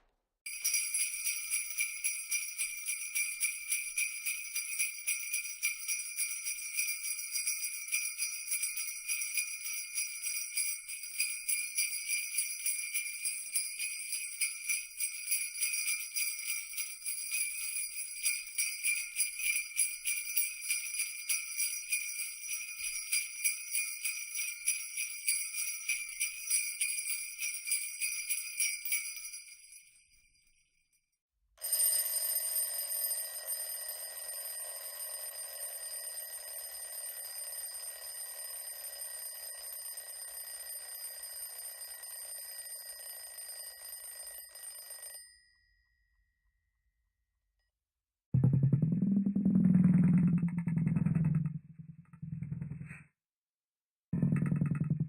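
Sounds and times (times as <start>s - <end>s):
alarm clock bell ringing: 0.5s - 29.6s, 31.6s - 45.8s
jingle bells jangling: 0.5s - 30.1s.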